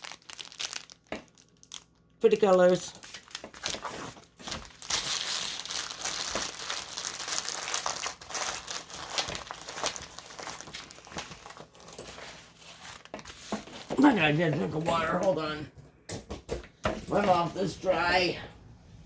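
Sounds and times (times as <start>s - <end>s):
plastic packaging crinkling: 0.0s - 14.4s.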